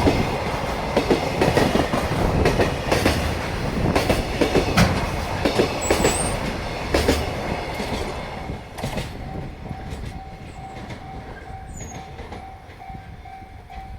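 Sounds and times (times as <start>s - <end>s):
train wheels clacking over rail joints: 0.0s - 12.9s
level crossing warning bell: 8.5s - 13.9s.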